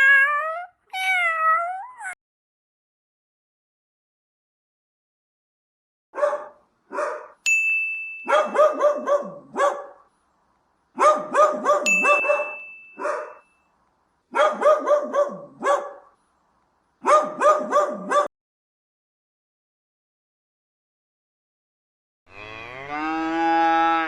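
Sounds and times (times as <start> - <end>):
dog barking: 6.1 - 7.4, 8.3 - 10.1, 11.0 - 13.4, 14.3 - 16.2, 17.0 - 18.3
bright chime ringing: 11.9 - 13.6.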